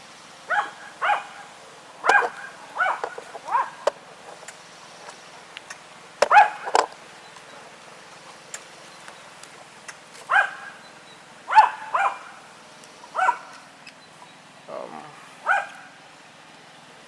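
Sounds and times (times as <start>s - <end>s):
dog barking: 0.5s - 1.4s, 2.0s - 3.8s, 6.3s - 6.7s, 10.3s - 10.8s, 11.5s - 12.4s, 13.1s - 13.5s, 15.4s - 15.9s.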